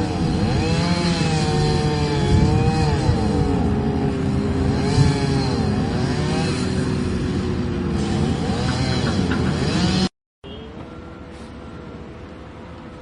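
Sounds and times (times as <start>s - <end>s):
vehicle engine revving: 0.0s - 10.1s.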